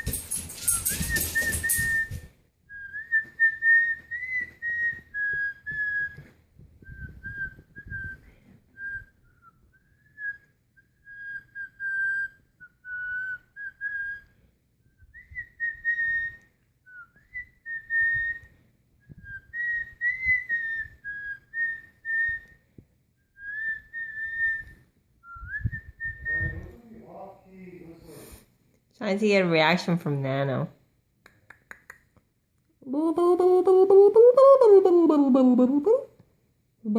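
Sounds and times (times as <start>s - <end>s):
person whistling: 0.0s - 14.4s, 15.0s - 22.7s, 23.4s - 26.7s.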